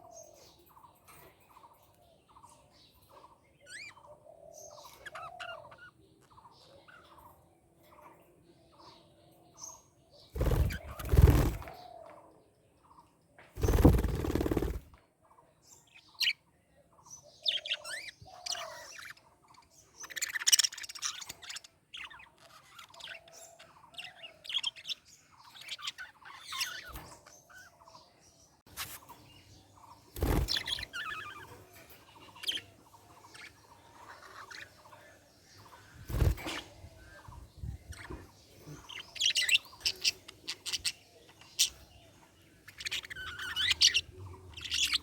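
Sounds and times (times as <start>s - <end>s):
budgerigars chirping: 3.3s - 7.4s, 10.4s - 11.9s, 17.1s - 28.0s, 28.8s - 45.0s.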